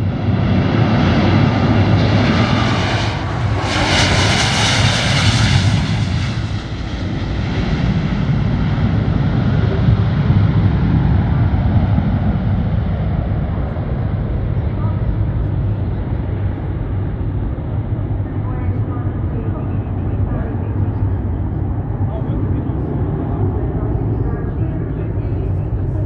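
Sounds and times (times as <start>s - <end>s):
aircraft engine rumble: 0.0s - 26.0s.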